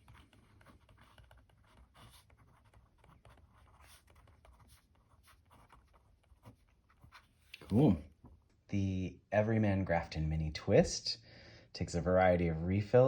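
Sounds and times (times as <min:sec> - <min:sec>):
ballpoint pen scratching on paper: 0:00.0 - 0:07.5.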